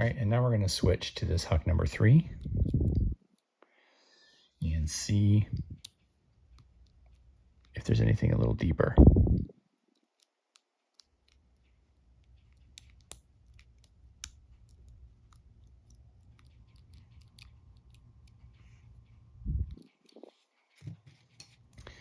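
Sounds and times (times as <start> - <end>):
lock pick clicking and scraping: 12.3 - 18.5.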